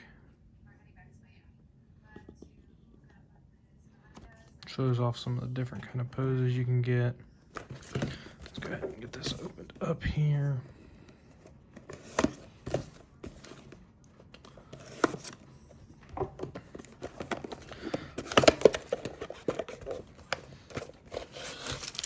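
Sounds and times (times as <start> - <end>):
cardboard box being opened: 11.3 - 22.0
packaging crinkling and tearing: 20.6 - 22.0.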